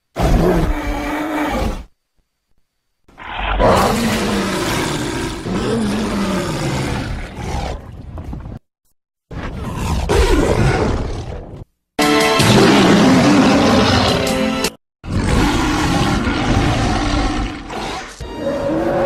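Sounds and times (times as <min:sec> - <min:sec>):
gorilla growling roar: 0:03.2 - 0:07.8, 0:12.4 - 0:14.3, 0:15.1 - 0:19.0.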